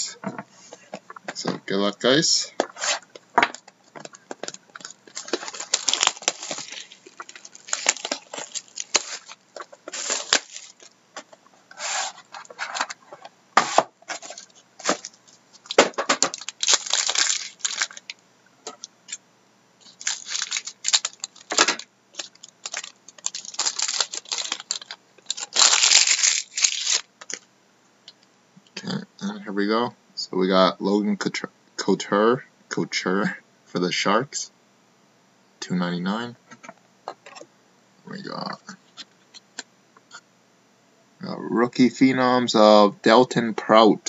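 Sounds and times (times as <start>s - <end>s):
shrink-wrap tearing and crinkling: 4.7s - 11.0s, 14.1s - 18.2s, 19.8s - 27.4s.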